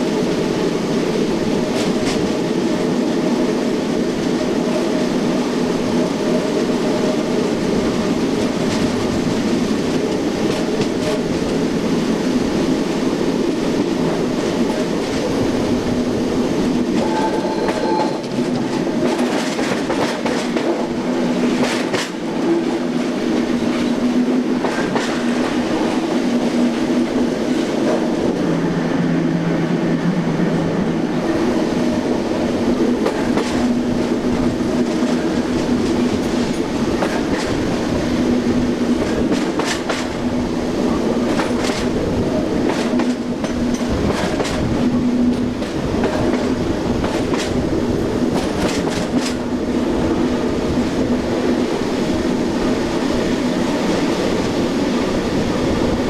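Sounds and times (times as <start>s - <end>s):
train wheels clicking over rail joints: 1.7s - 2.5s, 6.8s - 11.7s, 16.6s - 28.3s, 32.6s - 54.6s.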